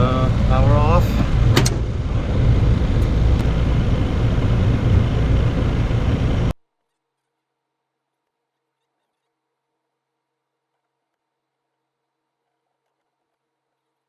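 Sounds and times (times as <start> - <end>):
loud low rumbling: 0.0 - 6.5.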